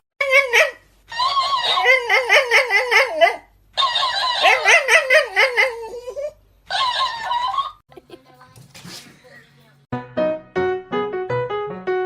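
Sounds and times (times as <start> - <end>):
dog howling: 0.2 - 7.8.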